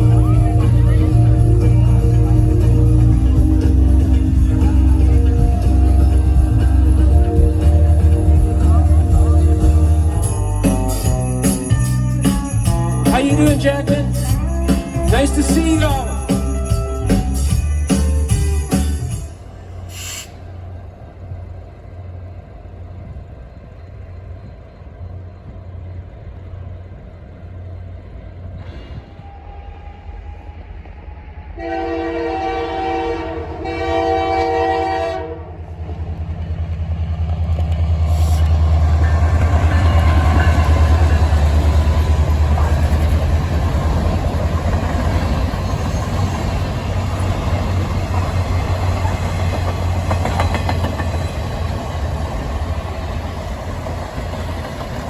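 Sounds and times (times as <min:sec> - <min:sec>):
diesel locomotive rumbling: 0:00.0 - 0:55.0
train cars rolling by: 0:00.0 - 0:55.0
train horn blasts: 0:31.5 - 0:35.6.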